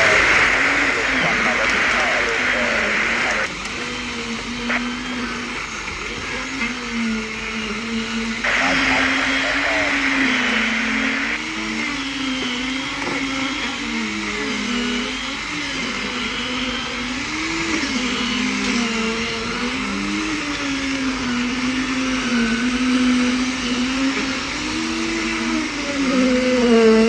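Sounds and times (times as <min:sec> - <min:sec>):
motor humming: 0:00.0 - 0:12.6.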